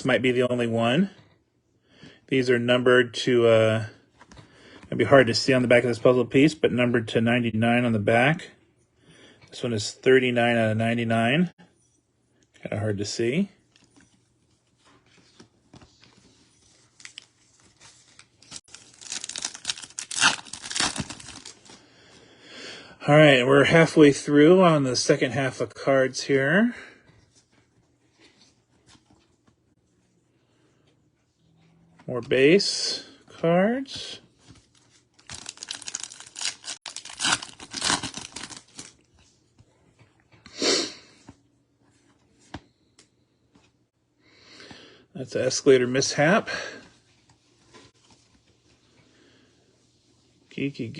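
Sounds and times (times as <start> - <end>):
wrapper crinkling and tearing: 16.9 - 21.8, 35.2 - 39.0.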